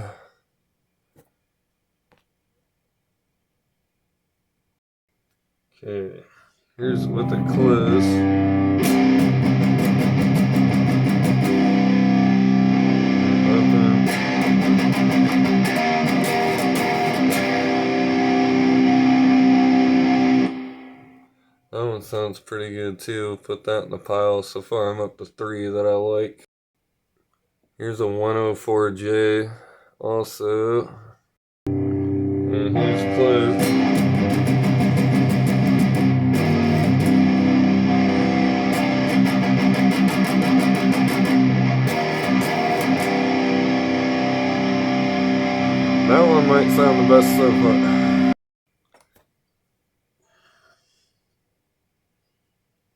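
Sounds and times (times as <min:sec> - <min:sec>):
electric guitar playing: 0:06.8 - 0:21.2, 0:31.7 - 0:48.4.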